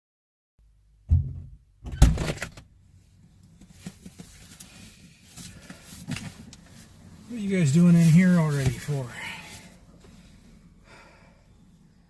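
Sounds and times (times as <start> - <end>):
door thudding: 1.1 - 2.5
door rattle: 1.1 - 2.6
faint shuffling and knocks: 3.0 - 10.5.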